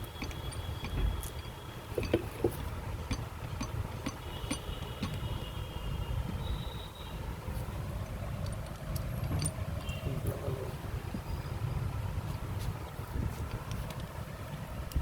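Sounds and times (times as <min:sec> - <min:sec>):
low steady rumble: 0:00.0 - 0:15.0
crimping tool clicks and knocks: 0:00.2 - 0:01.4, 0:02.0 - 0:05.2.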